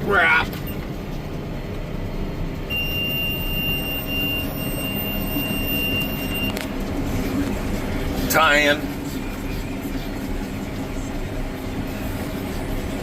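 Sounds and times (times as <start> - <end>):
tractor running: 0.0 - 13.0
high alarm tone: 2.7 - 6.6.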